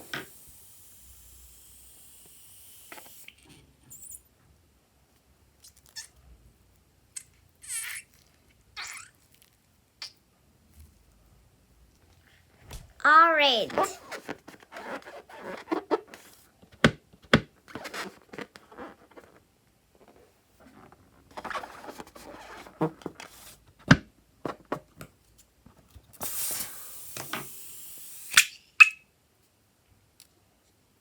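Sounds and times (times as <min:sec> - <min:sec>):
short squeak: 0:03.3 - 0:04.2.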